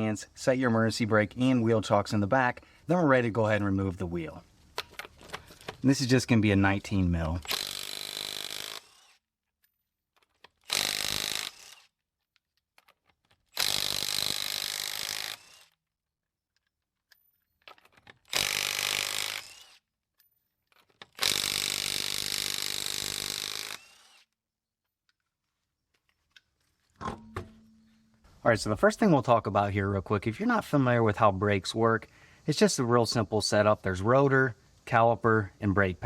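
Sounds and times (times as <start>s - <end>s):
impact wrench spinning lug nuts: 7.4s - 9.1s, 10.3s - 11.9s, 13.5s - 15.8s, 17.7s - 19.8s, 21.1s - 24.2s.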